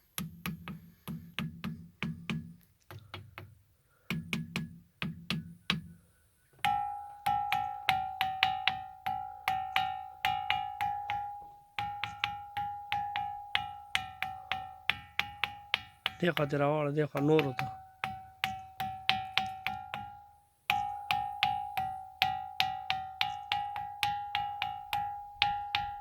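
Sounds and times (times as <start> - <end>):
rock struck with taps: 0.2 - 5.9, 10.4 - 25.1.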